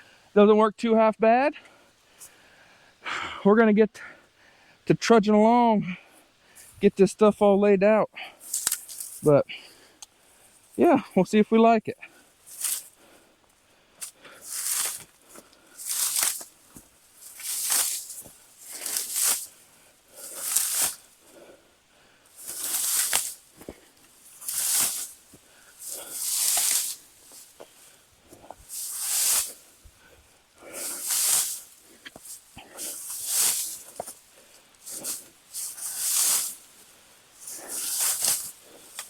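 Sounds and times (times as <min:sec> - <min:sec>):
dry weeds swishing and crunching: 0:08.4 - 0:09.4, 0:12.2 - 0:21.6, 0:22.2 - 0:39.0
stems snapping: 0:08.5 - 0:09.3, 0:14.0 - 0:19.6, 0:22.4 - 0:27.8, 0:37.4 - 0:39.0.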